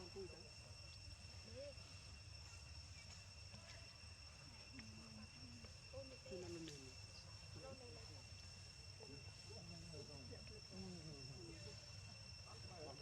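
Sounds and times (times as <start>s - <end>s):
insect chirring: 0.0s - 13.0s.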